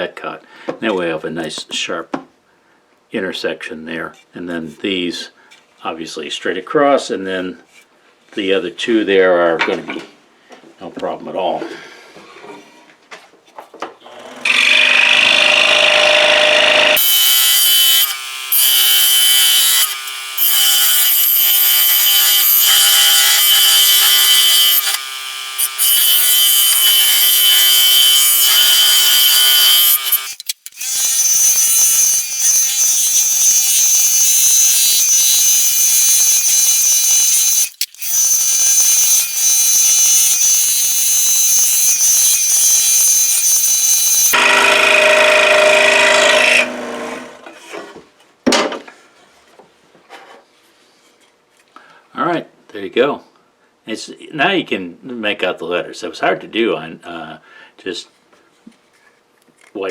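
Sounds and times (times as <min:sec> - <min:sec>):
scroll saw cutting wood: 0:14.1 - 0:48.0.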